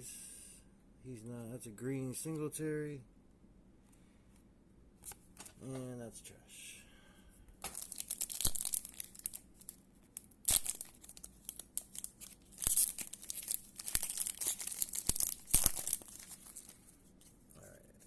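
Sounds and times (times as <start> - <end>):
foil wrapper tearing and crinkling: 7.6 - 16.8.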